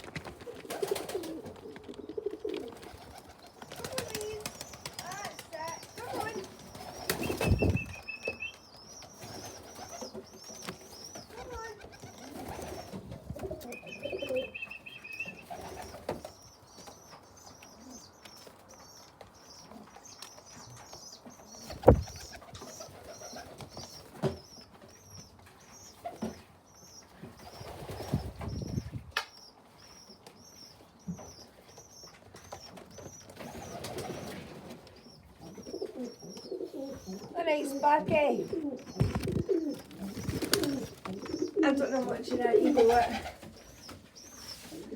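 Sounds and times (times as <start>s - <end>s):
wings flapping: 0.0s - 16.4s, 21.6s - 24.3s, 27.4s - 29.2s, 33.3s - 34.8s, 37.8s - 44.9s
pigeons cooing: 0.4s - 16.3s, 33.3s - 44.9s.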